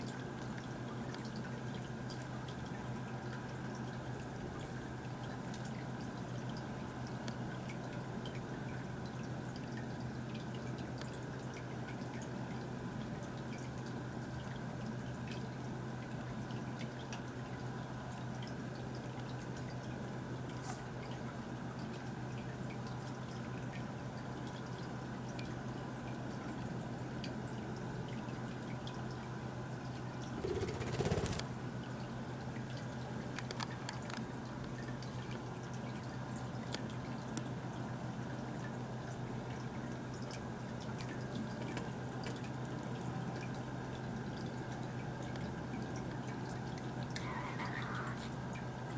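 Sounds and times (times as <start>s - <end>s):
water dripping and trickling: 0.0s - 48.9s.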